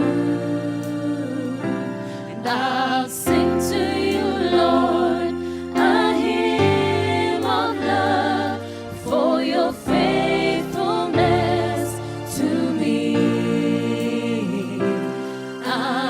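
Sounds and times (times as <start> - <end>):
held backing chords: 0.0 - 16.0
voices singing gospel song: 0.0 - 16.0.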